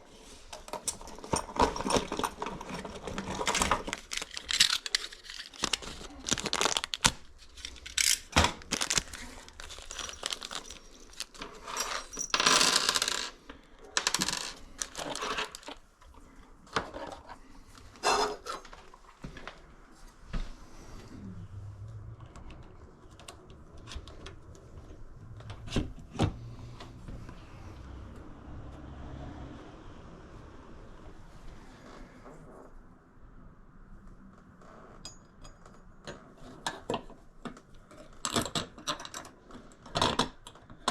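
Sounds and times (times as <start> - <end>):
metal parts and tools clinking: 0.6 - 15.8
low steady hum: 20.0 - 27.3.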